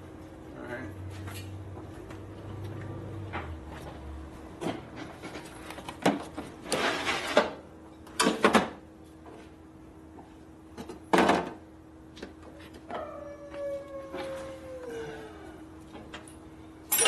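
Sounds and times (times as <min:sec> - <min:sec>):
floor jack clattering scrapes: 0:06.6 - 0:07.6.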